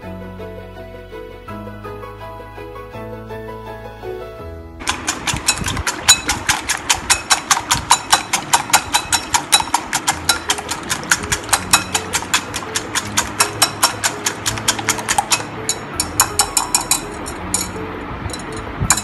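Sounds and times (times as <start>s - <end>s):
clicking percussion beat: 4.8s - 17.8s.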